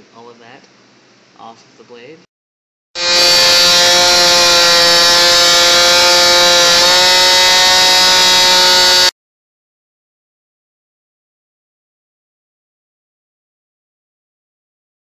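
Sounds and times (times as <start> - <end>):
power tool whining: 3.0 - 9.2.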